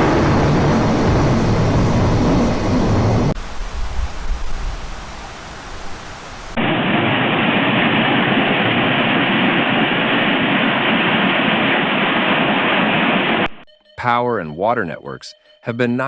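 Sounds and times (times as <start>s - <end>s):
water rushing: 3.4s - 6.7s.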